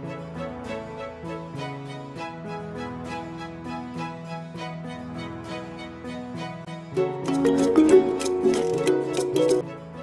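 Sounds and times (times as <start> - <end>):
plucked melody music: 6.9 - 10.0.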